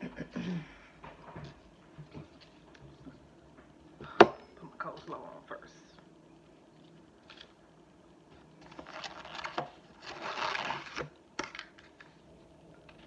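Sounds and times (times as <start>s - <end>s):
rustling scrape: 8.6s - 11.1s.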